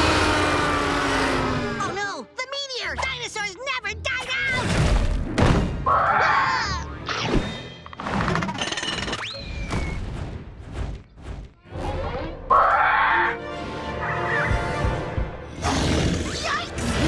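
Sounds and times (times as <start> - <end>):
thumps whacks and crashes: 4.5 - 5.8.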